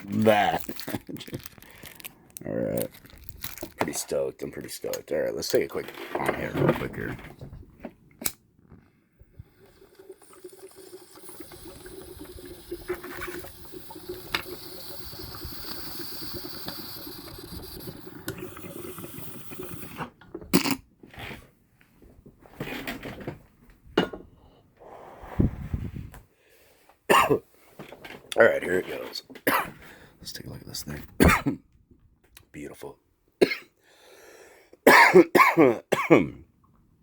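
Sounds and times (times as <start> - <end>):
packaging rustling and scraping: 0.1 - 4.2.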